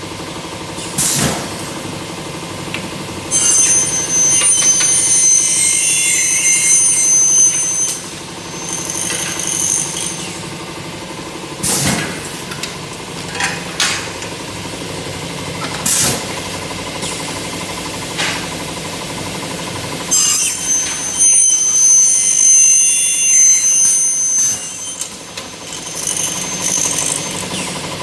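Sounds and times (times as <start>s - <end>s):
shrill metallic screech: 3.3s - 10.5s, 20.1s - 28.0s
machine running: 3.3s - 10.7s, 18.8s - 28.0s.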